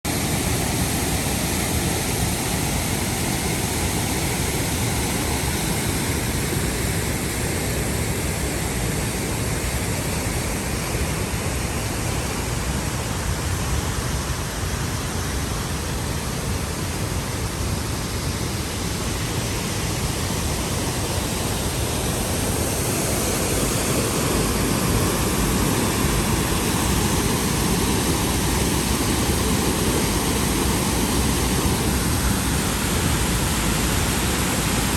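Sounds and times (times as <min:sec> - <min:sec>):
waterfall rushing: 0:00.1 - 0:34.9.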